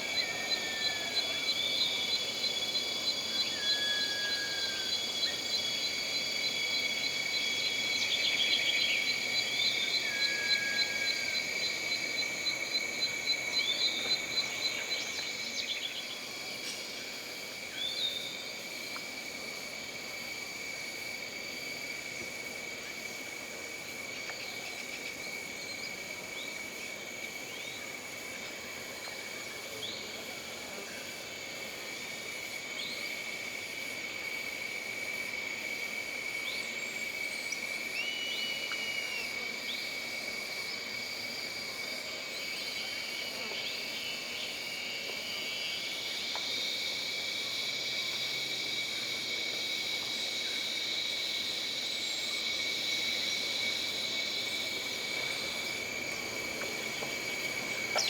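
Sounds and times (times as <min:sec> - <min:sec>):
insects droning: 0:00.0 - 0:58.0
insect pulsing trill: 0:52.2 - 0:58.0.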